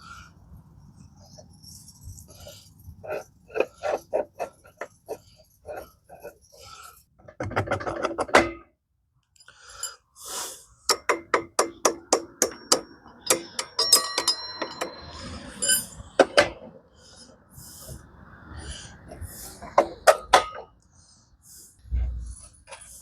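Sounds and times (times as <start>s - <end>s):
hammer tapping metal: 10.9s - 16.6s.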